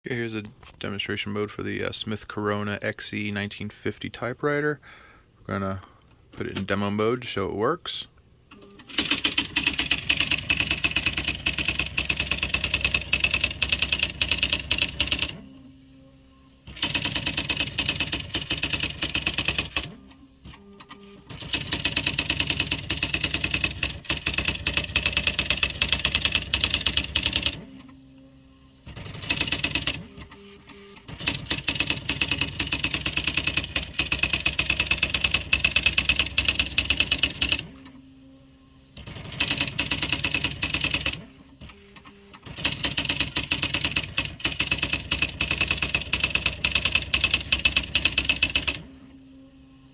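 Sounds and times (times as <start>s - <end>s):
typewriter print strikes clattering: 8.8s - 15.4s, 16.7s - 19.9s, 20.8s - 27.6s, 31.0s - 37.7s, 39.0s - 41.2s, 42.4s - 48.8s.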